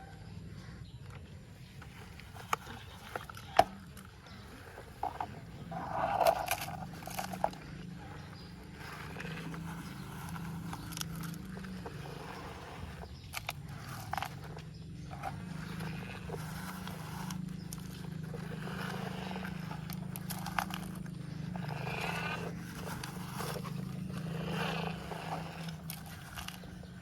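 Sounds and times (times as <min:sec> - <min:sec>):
steady low hum: 0:00.0 - 0:27.0
dirt scraping: 0:01.2 - 0:27.0.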